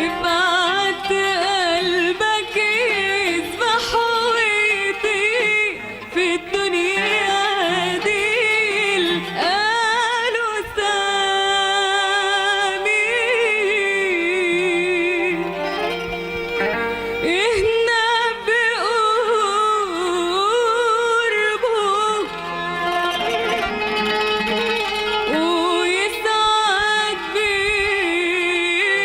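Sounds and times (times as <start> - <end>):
woman singing wordless melisma: 0.0 - 22.9, 25.3 - 29.0
instrumental accompaniment: 11.6 - 28.8.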